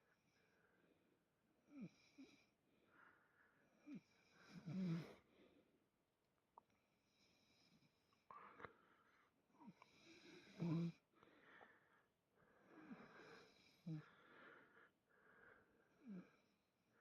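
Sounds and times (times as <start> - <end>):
cat snoring faintly: 3.8 - 5.2, 9.6 - 11.0, 12.7 - 14.3, 15.9 - 16.5.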